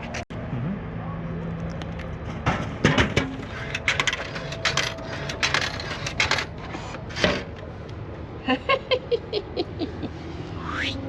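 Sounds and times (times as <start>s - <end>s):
coins clinking into coin slot: 3.7s - 6.5s.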